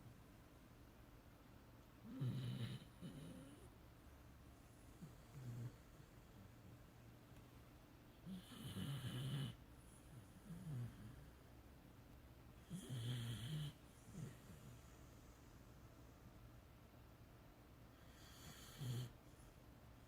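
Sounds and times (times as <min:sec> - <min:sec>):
dog snoring: 0:02.0 - 0:03.7, 0:04.9 - 0:06.6, 0:08.2 - 0:11.3, 0:12.6 - 0:15.2, 0:18.0 - 0:19.2.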